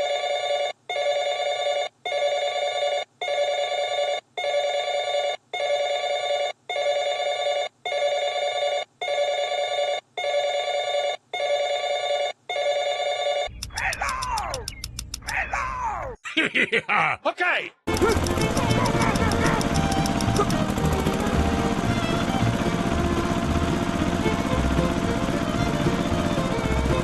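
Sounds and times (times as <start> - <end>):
gliding chirps: 13.5 - 15.3
low hum: 17.9 - 27.0.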